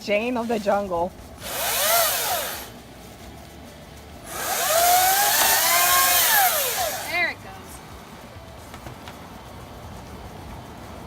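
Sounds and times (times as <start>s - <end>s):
chainsaw revving: 1.4s - 2.7s, 4.3s - 7.2s.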